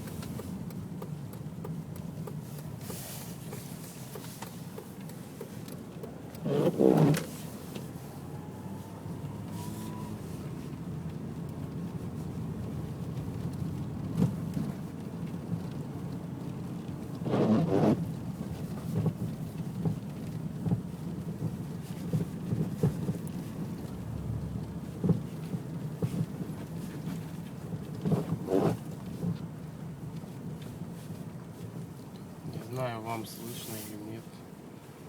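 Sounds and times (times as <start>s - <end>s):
road rumble: 0.0s - 35.0s
suspension knocking over bumps: 18.8s - 28.6s.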